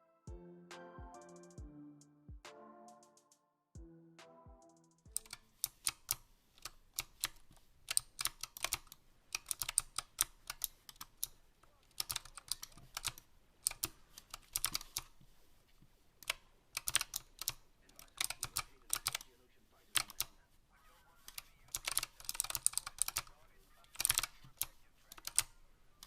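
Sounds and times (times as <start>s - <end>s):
music: 0.0s - 5.4s
keyboard key clicks: 5.1s - 15.1s, 16.2s - 19.2s, 20.0s - 20.3s, 21.3s - 25.6s.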